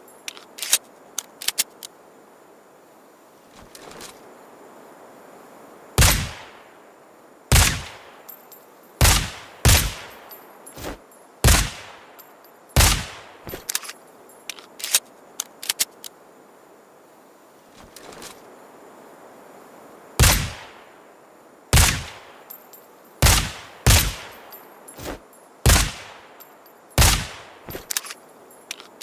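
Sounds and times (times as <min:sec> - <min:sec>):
small sharp clicks: 0:00.2 - 0:02.0, 0:13.5 - 0:16.2, 0:27.7 - 0:29.0
suppressed pistol shots: 0:06.0 - 0:06.5, 0:07.5 - 0:08.0, 0:09.0 - 0:10.1, 0:11.4 - 0:12.0, 0:12.8 - 0:13.9, 0:20.2 - 0:20.7, 0:21.8 - 0:22.2, 0:23.2 - 0:24.3, 0:25.6 - 0:26.2, 0:27.0 - 0:28.2.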